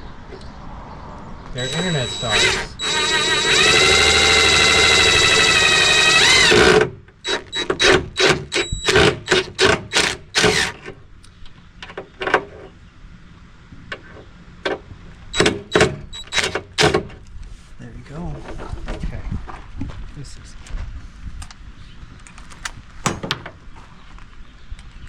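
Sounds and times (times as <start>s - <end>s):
cordless drill driving a screw: 1.6s - 10.8s, 15.4s - 16.9s
sharp clicks: 1.6s - 11.4s, 22.2s - 22.8s.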